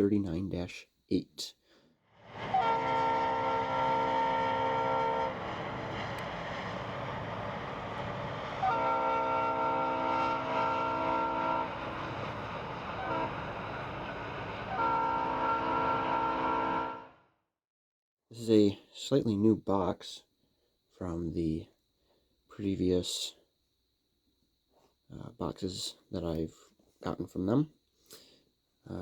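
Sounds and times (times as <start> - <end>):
locomotive running rumble: 2.3 - 16.1
locomotive horn blasts: 2.5 - 5.4, 8.6 - 11.8, 13.0 - 13.5, 14.7 - 17.2.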